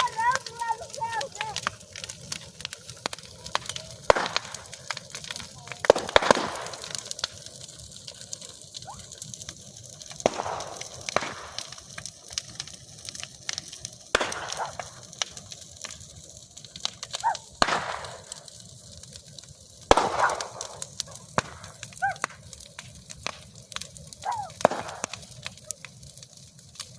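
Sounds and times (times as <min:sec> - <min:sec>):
bonfire crackling and popping: 0:00.0 - 0:26.9.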